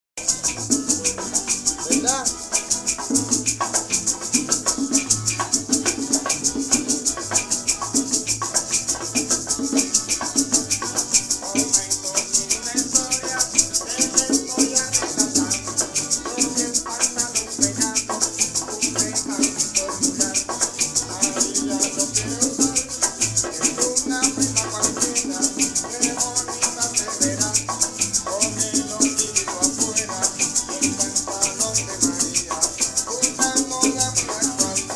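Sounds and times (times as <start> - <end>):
maraca shaking: 0.2 - 34.9
plucked strings: 0.2 - 34.9
repeating bass line: 0.2 - 34.9.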